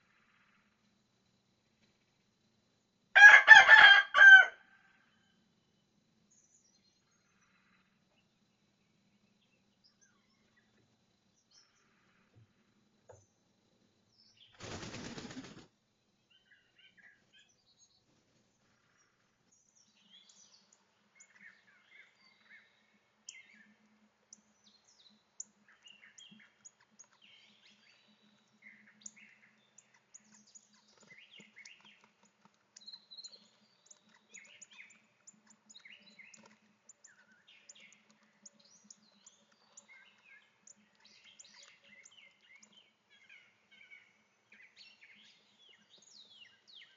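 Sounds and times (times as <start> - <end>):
songbirds chirping: 0.0 - 46.9.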